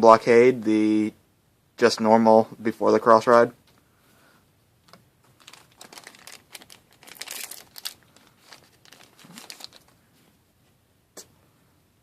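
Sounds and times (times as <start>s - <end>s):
trading card packaging crinkling: 4.9s - 10.0s.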